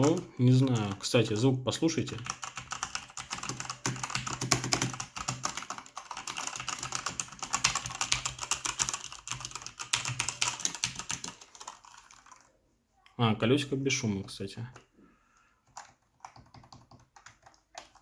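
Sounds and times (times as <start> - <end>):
mechanical keyboard typing: 0.0 - 1.1, 2.0 - 12.5, 15.7 - 18.0.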